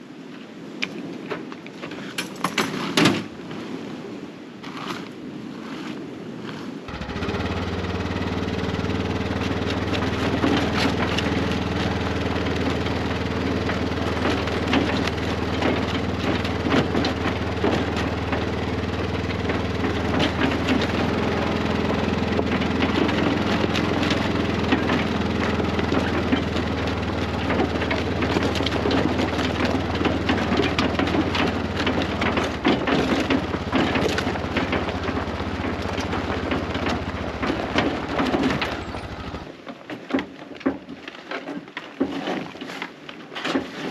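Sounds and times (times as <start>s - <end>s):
engine idling: 6.9s - 39.5s.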